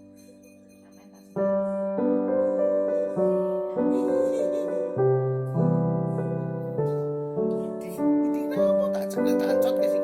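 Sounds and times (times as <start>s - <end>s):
piano music: 0.0s - 10.0s.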